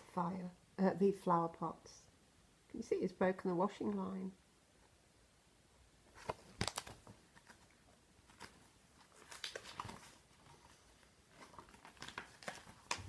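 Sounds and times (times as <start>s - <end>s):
book page turning: 6.1s - 13.0s.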